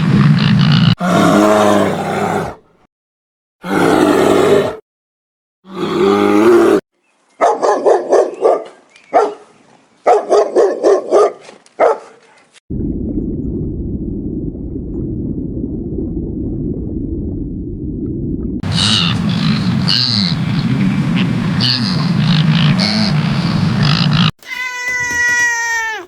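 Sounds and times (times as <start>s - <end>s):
animal calls: 0.0s - 1.5s, 18.6s - 24.3s
steady low noise: 12.7s - 24.3s.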